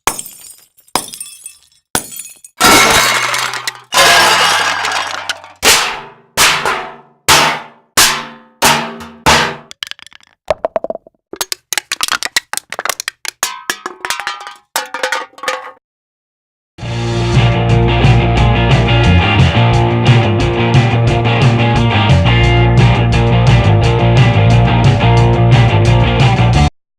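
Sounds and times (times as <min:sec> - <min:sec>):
glass hits and breaks: 0:00.0 - 0:10.1, 0:13.4 - 0:15.8.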